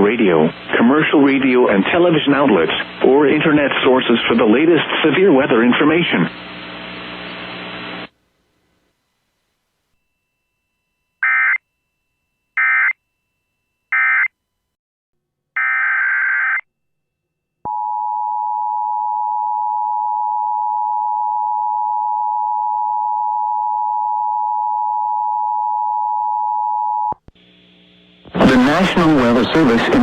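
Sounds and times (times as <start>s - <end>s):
steady single-pitch alarm tone: 10.0s - 14.3s, 17.7s - 27.2s.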